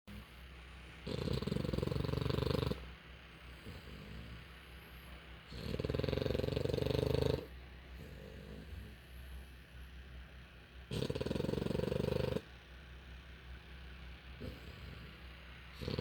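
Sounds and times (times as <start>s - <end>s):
puppy breathing quietly: 0.1s - 10.1s
puppy snoring: 1.0s - 9.6s, 10.9s - 12.5s, 14.3s - 16.0s.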